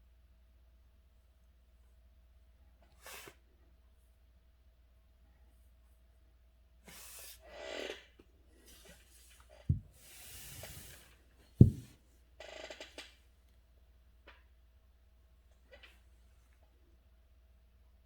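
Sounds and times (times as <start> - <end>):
dull thumps: 9.7 - 11.0, 11.6 - 12.0.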